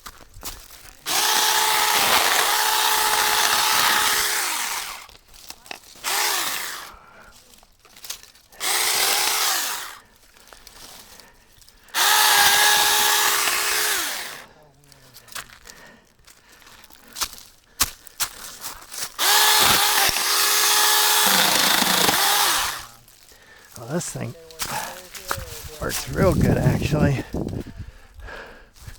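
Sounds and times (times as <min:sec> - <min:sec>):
electric chainsaw cutting branches: 0:01.0 - 0:07.0, 0:08.6 - 0:10.0, 0:11.9 - 0:14.5, 0:19.0 - 0:23.2, 0:23.8 - 0:27.1.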